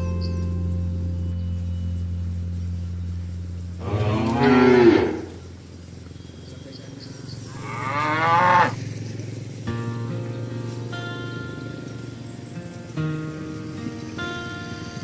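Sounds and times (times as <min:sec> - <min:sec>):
cows mooing: 0:03.8 - 0:09.2.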